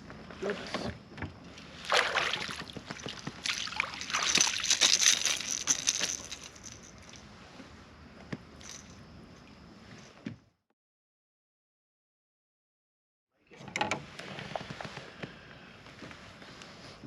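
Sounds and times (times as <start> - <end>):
water splashing against kayak: 0.4 - 6.4.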